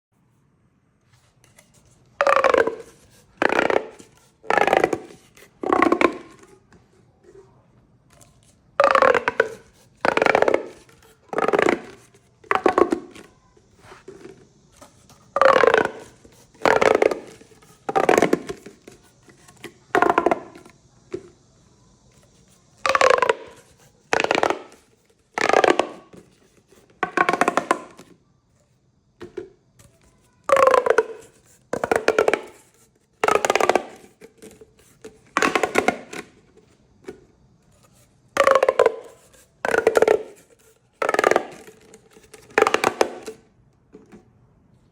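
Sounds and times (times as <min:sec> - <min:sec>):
plastic pop tubes ratcheting pops: 0:02.2 - 0:06.5, 0:08.4 - 0:13.3, 0:14.0 - 0:21.3, 0:22.2 - 0:28.1, 0:30.4 - 0:37.2, 0:38.4 - 0:43.4.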